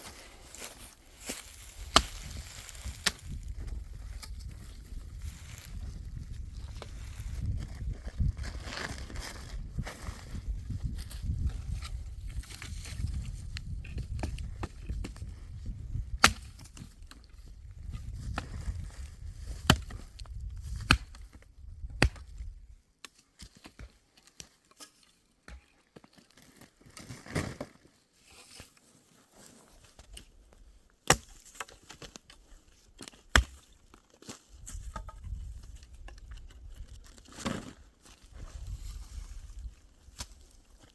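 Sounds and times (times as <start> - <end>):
sharp blows on dry wood: 1.2 - 4.4, 16.1 - 16.9, 19.5 - 22.4, 33.0 - 33.7.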